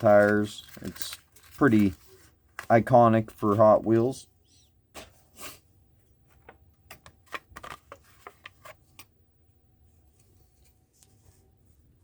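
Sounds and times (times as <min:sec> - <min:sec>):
packaging rustle: 0:00.0 - 0:03.5.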